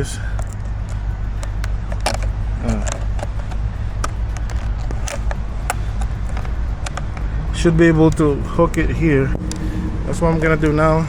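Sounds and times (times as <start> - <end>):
steady low hum: 0.0 - 11.0
plastic clicks and taps: 0.4 - 7.3.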